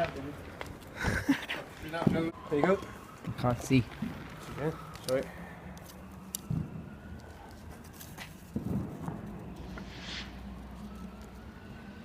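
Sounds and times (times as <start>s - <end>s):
firework pops and crackles: 0.0s - 1.0s, 1.6s - 5.2s, 5.8s - 7.0s, 8.2s - 10.5s
distant firework thump: 2.0s - 2.3s, 6.4s - 6.9s, 8.6s - 10.4s.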